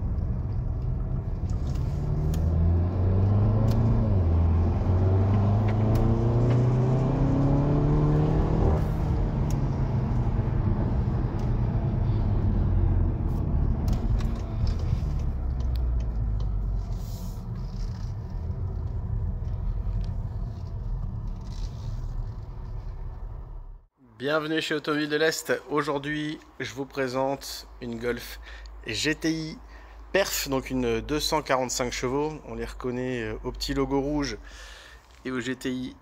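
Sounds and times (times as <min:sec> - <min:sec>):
car engine revving: 0:00.0 - 0:23.9.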